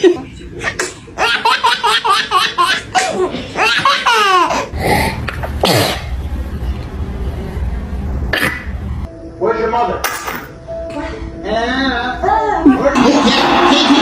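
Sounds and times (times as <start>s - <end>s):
small child laughing: 1.2s - 4.7s.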